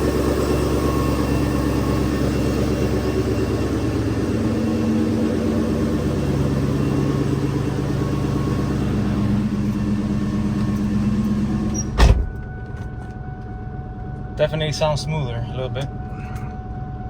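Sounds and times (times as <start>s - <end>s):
car engine idling: 0.0s - 17.0s
loud thump: 11.9s - 12.4s.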